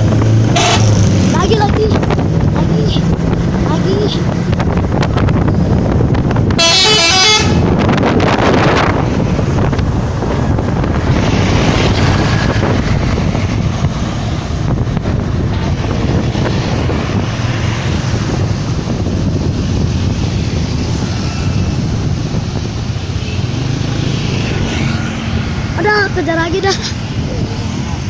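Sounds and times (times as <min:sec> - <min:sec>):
traffic rumble: 0:00.0 - 0:28.0
wind noise on microphone: 0:00.0 - 0:28.0
bus multi-tone air horn: 0:00.5 - 0:00.9, 0:06.6 - 0:07.8.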